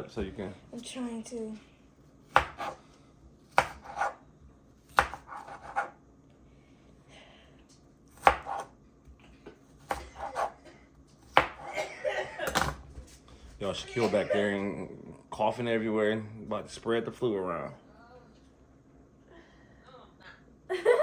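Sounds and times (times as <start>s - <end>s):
knife chopping on cutting board: 2.2s - 2.8s, 3.4s - 4.2s, 4.8s - 6.0s, 8.2s - 8.7s, 9.8s - 10.6s, 11.2s - 11.7s.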